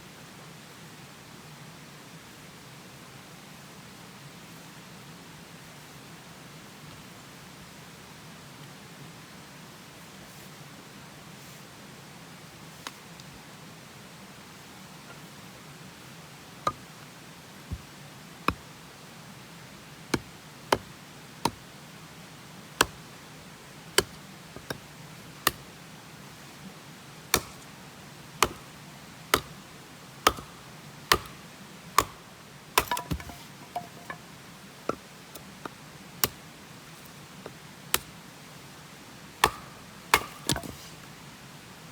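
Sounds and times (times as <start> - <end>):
axe chopping firewood: 16.7 - 16.9, 17.7 - 17.9, 18.5 - 18.8, 20.1 - 21.7, 22.8 - 25.8, 27.2 - 38.2, 39.3 - 41.1.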